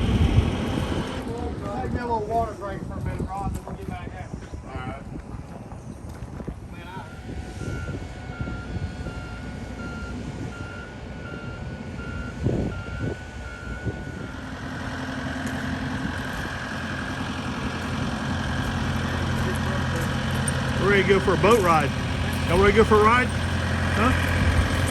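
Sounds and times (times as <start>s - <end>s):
diesel engine running: 0.0s - 24.9s
machine warning beeper: 7.0s - 14.5s.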